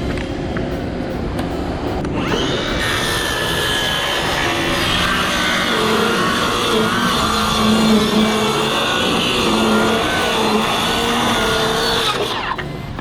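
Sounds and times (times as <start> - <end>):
power saw cutting wood: 2.1 - 13.0.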